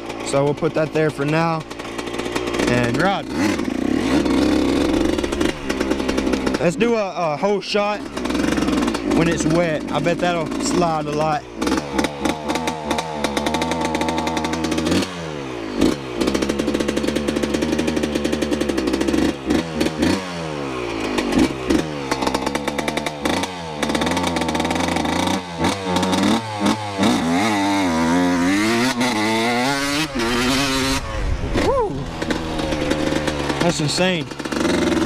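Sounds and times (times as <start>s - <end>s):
dirt bike engine revving: 0.0s - 35.0s.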